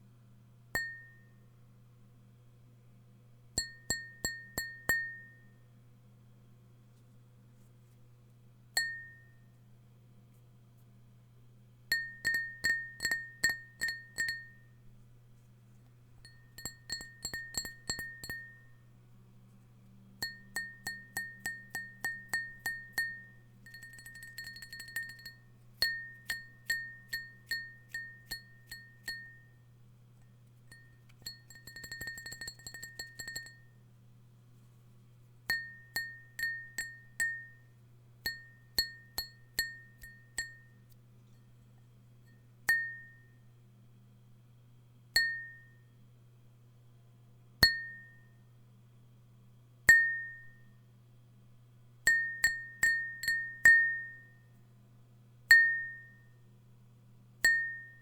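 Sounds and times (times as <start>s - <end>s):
glass tapping: 0.8s - 1.3s, 3.6s - 5.4s, 8.8s - 9.4s, 11.9s - 14.6s, 16.3s - 18.7s, 20.2s - 29.5s, 30.7s - 33.7s, 35.5s - 37.6s, 38.3s - 40.7s, 42.7s - 43.2s, 45.2s - 45.8s, 47.6s - 48.2s, 49.9s - 50.6s, 52.1s - 54.3s, 55.5s - 56.2s, 57.5s - 58.0s.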